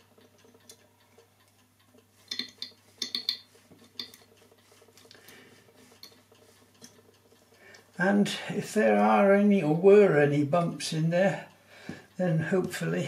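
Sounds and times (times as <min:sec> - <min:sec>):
light metallic clicks and taps: 0:00.0 - 0:04.4.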